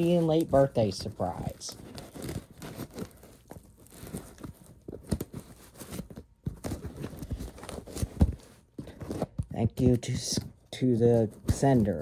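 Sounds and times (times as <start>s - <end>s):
cardboard being cut and torn: 1.7s - 8.4s.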